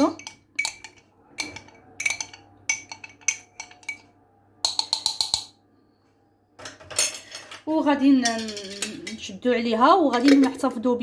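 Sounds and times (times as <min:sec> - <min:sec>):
spoon clinking against glass jar: 0:00.0 - 0:05.6.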